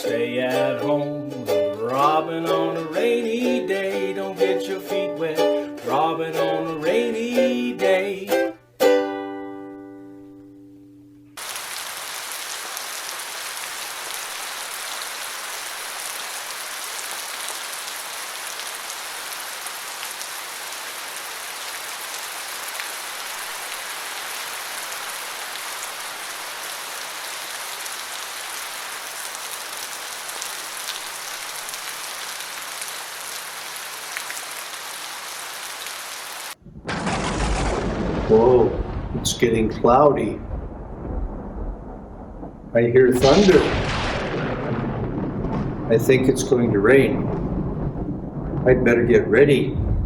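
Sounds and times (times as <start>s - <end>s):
rain falling: 0.0s - 8.6s, 11.4s - 50.0s
thunder clap and rumble: 36.6s - 50.0s.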